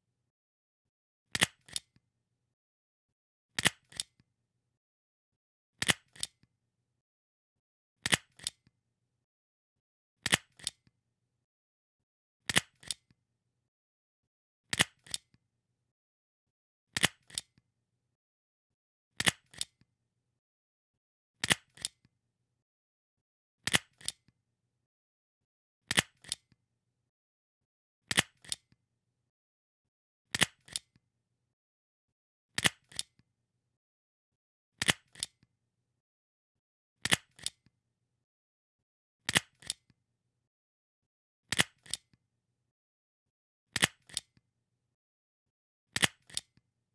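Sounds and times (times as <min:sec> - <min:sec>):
stapler snapping shut: 0:34.8 - 0:35.3, 0:37.0 - 0:37.6, 0:39.3 - 0:39.8.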